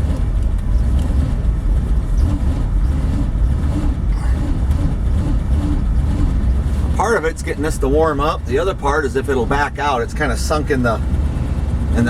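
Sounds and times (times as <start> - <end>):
truck engine running on choke: 0.0 - 12.0.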